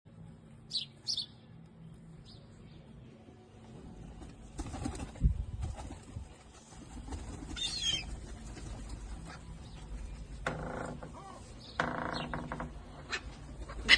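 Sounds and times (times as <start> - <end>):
birds chirping: 0.6 - 3.3, 7.4 - 13.9.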